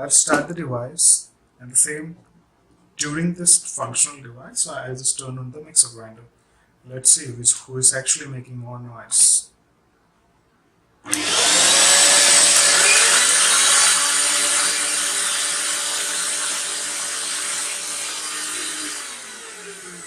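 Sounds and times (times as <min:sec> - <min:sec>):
vacuum cleaner and mixer grinder whine: 0:11.1 - 0:20.0.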